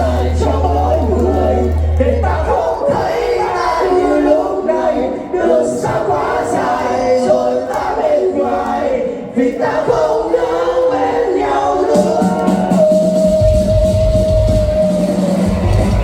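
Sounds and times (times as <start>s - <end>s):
crowd noise: 0.0s - 16.0s
voices singing together: 0.0s - 16.0s.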